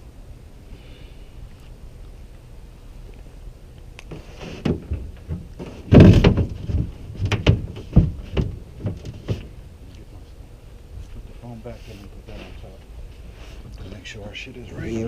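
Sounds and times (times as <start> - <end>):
knocks and scrapes in aluminum boat: 4.1 - 9.6
heavy bang on aluminum boat: 4.6 - 9.4.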